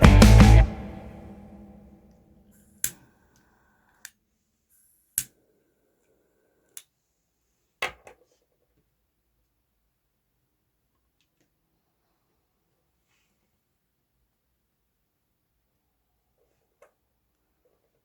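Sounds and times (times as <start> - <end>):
music: 0.0 - 2.0.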